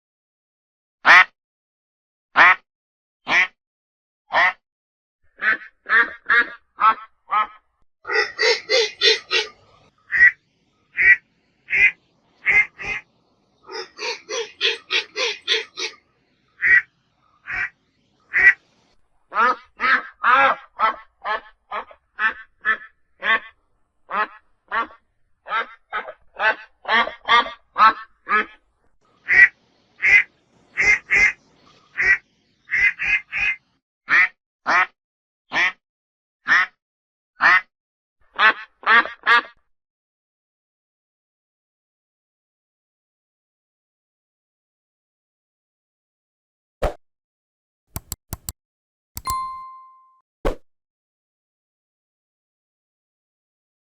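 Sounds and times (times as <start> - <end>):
duck quacking: 1.1 - 1.3, 2.4 - 2.6, 3.3 - 3.6, 4.3 - 4.6, 5.4 - 10.4, 11.0 - 13.0, 13.7 - 16.0, 16.6 - 18.6, 19.3 - 28.6, 29.2 - 31.4, 32.0 - 35.8, 36.5 - 36.8, 37.4 - 37.7, 38.4 - 39.6.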